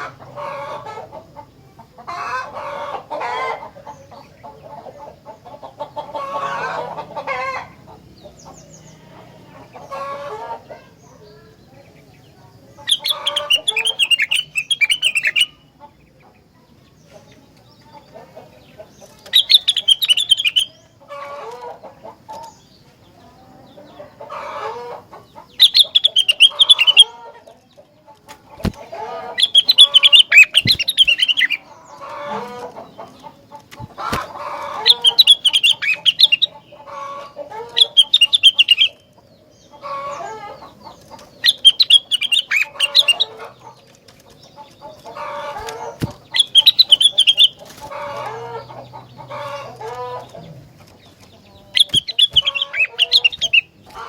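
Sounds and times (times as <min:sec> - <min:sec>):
songbird trilling: 0:12.8 - 0:15.7, 0:19.3 - 0:20.9, 0:25.5 - 0:27.2, 0:28.6 - 0:33.0, 0:34.0 - 0:43.6, 0:44.7 - 0:50.6, 0:51.3 - 0:54.0
sharp clicks: 0:49.8 - 0:52.6.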